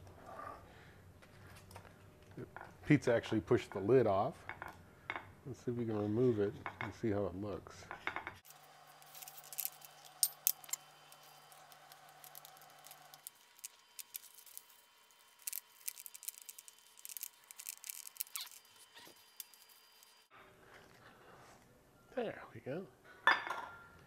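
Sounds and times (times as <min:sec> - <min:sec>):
metal clicks and scrapes: 0:09.0 - 0:14.8.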